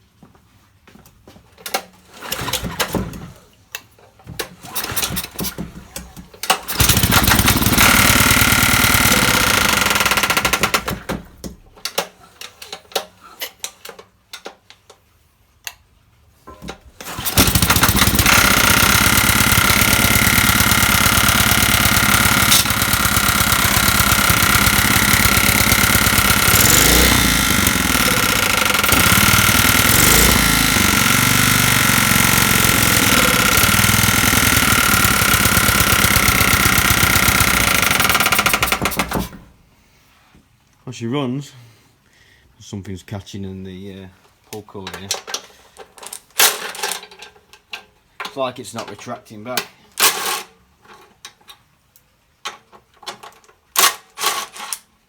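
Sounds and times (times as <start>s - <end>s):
recoil cord pulls: 4.4s - 11.3s, 16.6s - 39.4s
generator engine running: 6.6s - 11.1s, 17.0s - 39.3s.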